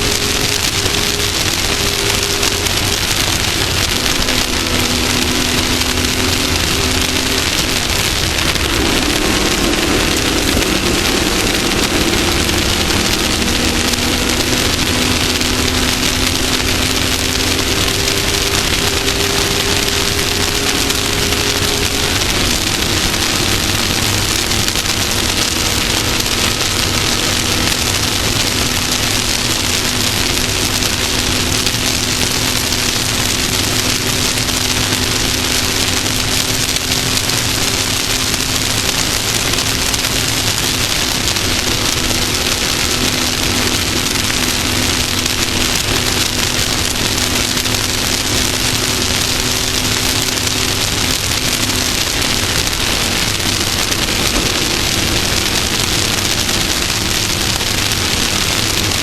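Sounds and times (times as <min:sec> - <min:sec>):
vehicle engine running: 0:00.0 - 0:59.0
wind and dirt road noise: 0:00.0 - 0:59.0.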